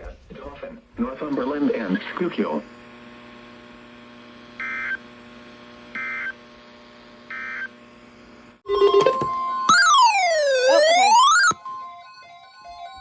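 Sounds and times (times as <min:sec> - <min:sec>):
loud steady tones and clicks: 0:04.3 - 0:13.0
screechy digital chirps: 0:08.7 - 0:11.6.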